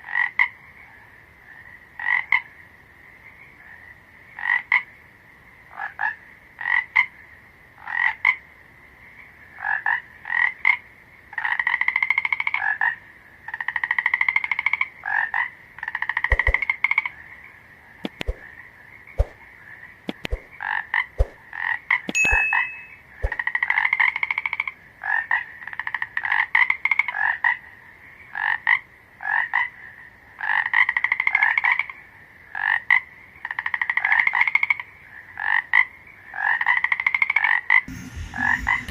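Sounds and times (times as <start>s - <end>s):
frogs croaking: 0.0s - 20.9s, 23.6s - 37.9s
sharp clicks: 20.1s - 20.5s.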